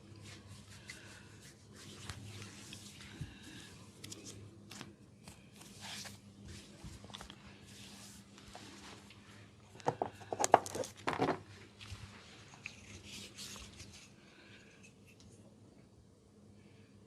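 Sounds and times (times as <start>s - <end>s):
hands rubbing skin: 0.1s - 9.0s.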